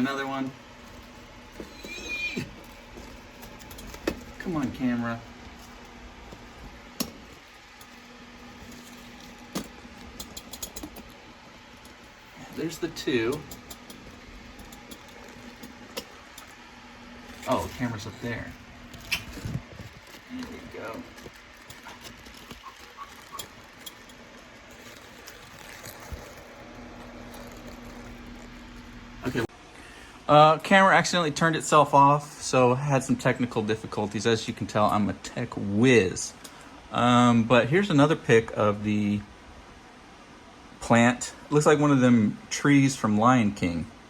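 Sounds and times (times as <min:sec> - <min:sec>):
faint steady hum: 0:00.0 - 0:44.0
small handling clicks and knocks: 0:02.4 - 0:11.2, 0:11.8 - 0:16.6, 0:18.9 - 0:28.9.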